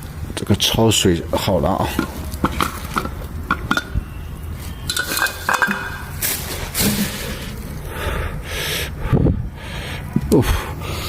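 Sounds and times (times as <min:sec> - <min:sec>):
cookware clinking: 0:02.0 - 0:04.0, 0:04.9 - 0:06.2.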